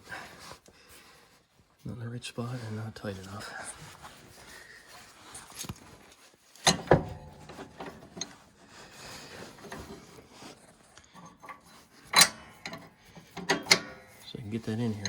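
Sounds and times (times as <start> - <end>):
metal latch clanking: 6.6 - 8.2, 12.1 - 14.1
latch clicking and rubbing: 6.6 - 8.3, 11.5 - 14.1.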